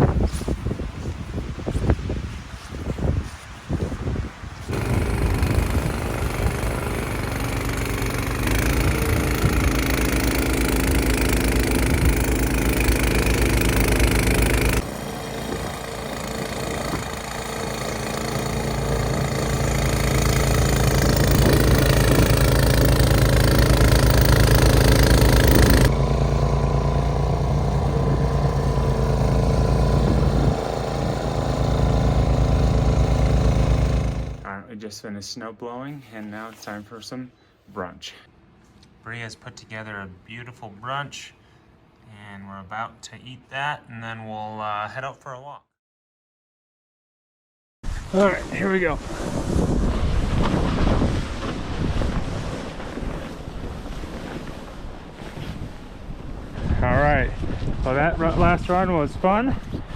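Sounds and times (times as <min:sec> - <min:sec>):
snowblower engine running: 0:04.7 - 0:34.5.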